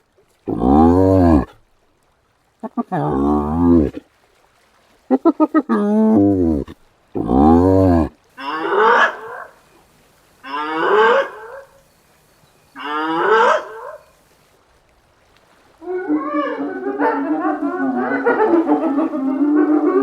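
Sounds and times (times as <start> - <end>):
hyena whooping: 15.8 - 20.0.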